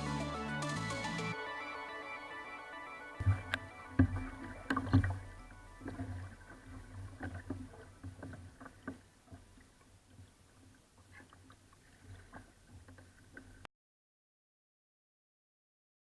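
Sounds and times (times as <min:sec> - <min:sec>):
knocks and taps on a kayak: 0:03.2 - 0:09.4.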